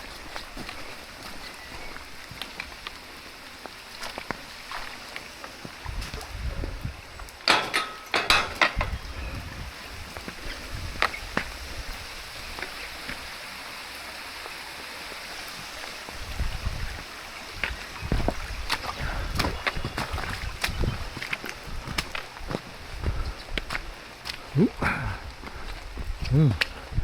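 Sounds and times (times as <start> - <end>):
hiss of wind and rain: 0.0 - 27.0
wind buffeting microphone: 5.8 - 7.5, 8.2 - 13.1, 16.0 - 27.0.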